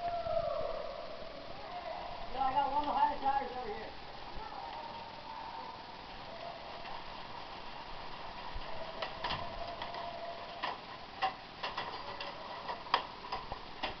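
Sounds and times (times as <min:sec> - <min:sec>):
steady background hiss: 0:00.0 - 0:14.0
sharp clicks and knocks: 0:09.0 - 0:14.0.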